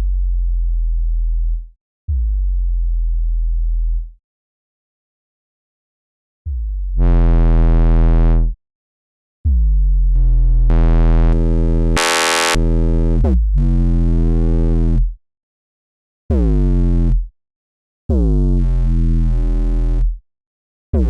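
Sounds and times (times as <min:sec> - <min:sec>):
synthesizer bass notes: 0:10.1 - 0:14.8.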